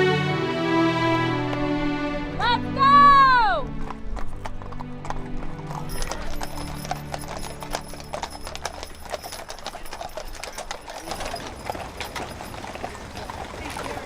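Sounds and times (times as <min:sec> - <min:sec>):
horse hooves clip-clopping: 0:03.1 - 0:14.0.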